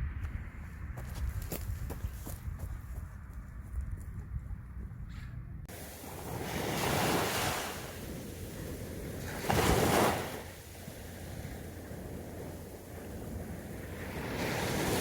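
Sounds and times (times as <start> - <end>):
wind on the microphone: 0.0 - 15.0
sea waves washing in: 5.7 - 15.0.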